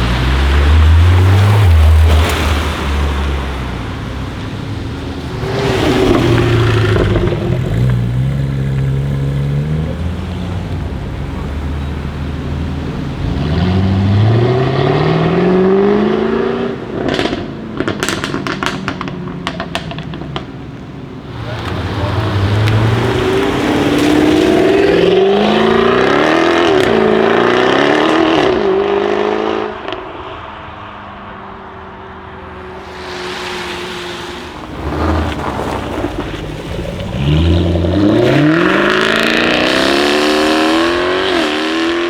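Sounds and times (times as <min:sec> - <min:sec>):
exhaust crackles and pops: 0:00.0 - 0:13.4, 0:16.9 - 0:27.5, 0:32.4 - 0:40.9
car engine accelerating hard: 0:00.0 - 0:42.0.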